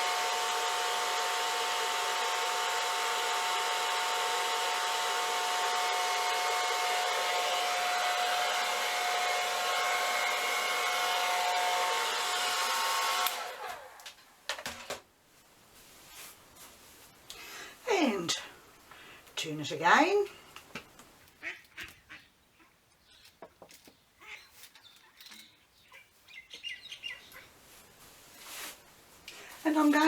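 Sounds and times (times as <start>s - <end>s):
hair dryer whining: 0.0s - 15.0s.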